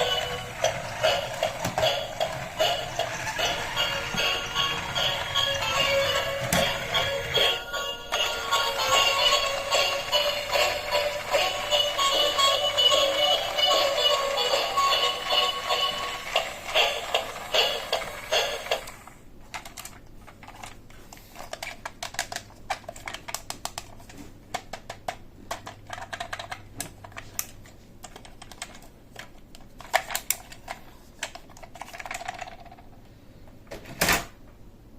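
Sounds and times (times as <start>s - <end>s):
music with steady tune: 0.0s - 18.9s
plastic toy parts clicking: 19.5s - 20.8s, 21.4s - 32.9s.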